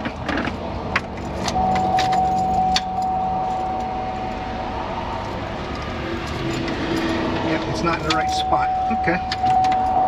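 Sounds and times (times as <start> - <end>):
keys jangling: 1.1 - 3.9
steady single-pitched tone: 1.6 - 5.0.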